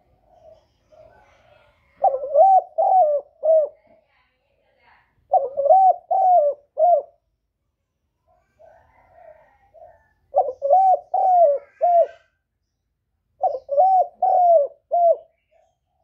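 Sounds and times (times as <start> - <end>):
dove cooing: 0.0 - 4.0, 5.3 - 7.2, 8.3 - 12.3, 13.4 - 16.0.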